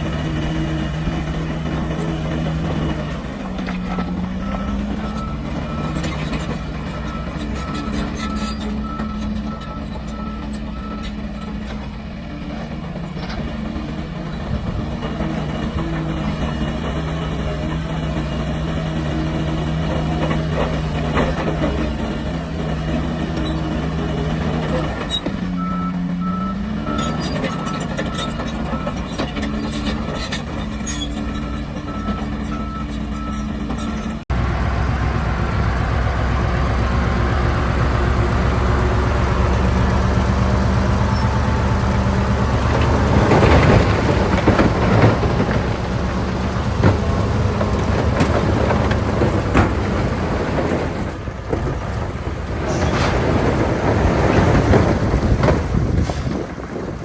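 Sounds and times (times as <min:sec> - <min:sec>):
heavy machinery diesel engines: 0:00.0 - 0:57.0
rattling rush: 0:34.3 - 0:57.0.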